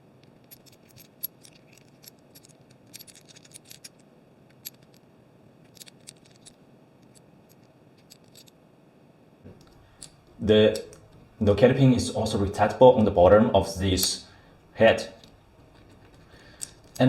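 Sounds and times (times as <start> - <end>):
small metal clicks and ticks: 0.2 - 5.0, 5.6 - 8.6, 15.2 - 17.0.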